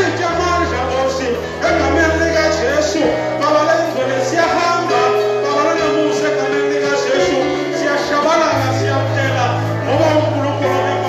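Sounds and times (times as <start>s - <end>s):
long held bass notes: 0.0s - 11.0s
worship singing: 0.0s - 11.0s.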